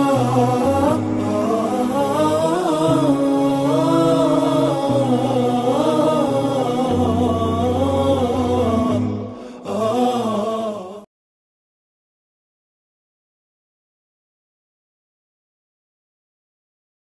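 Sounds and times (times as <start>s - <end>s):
sustained low drone: 0.0s - 9.5s
chanted vocal melody: 0.0s - 11.1s.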